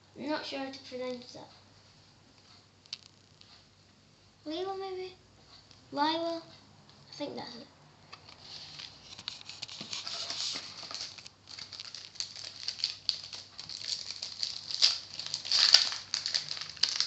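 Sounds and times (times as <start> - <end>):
cards being handled: 8.4 - 17.0
wrapper crinkling: 8.6 - 17.0.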